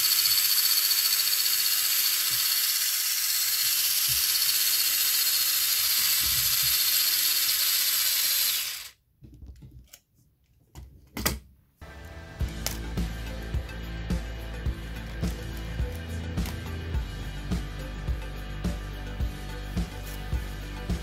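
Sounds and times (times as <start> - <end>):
toy car electric motor whine: 0.0 - 9.0.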